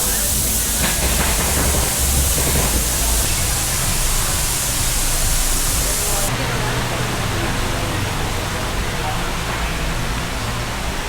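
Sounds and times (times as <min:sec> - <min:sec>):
factory hiss: 0:00.0 - 0:11.0.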